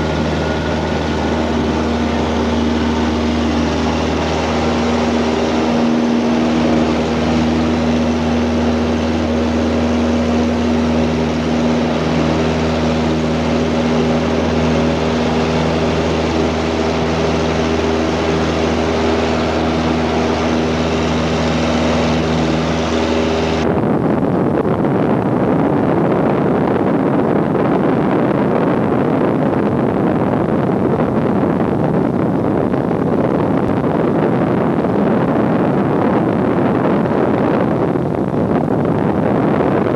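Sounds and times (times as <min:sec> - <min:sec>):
even rushing noise: 0:00.0 - 0:24.2
airplane engines droning: 0:00.0 - 0:39.9.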